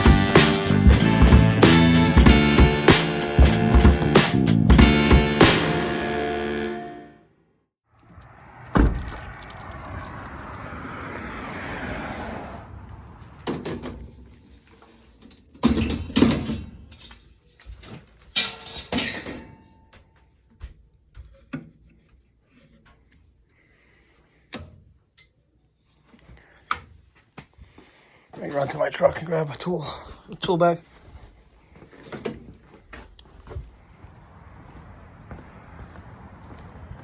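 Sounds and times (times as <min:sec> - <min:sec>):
rushing noise: 0:08.0 - 0:14.4, 0:33.3 - 0:37.0
jingling rattles: 0:09.1 - 0:10.6.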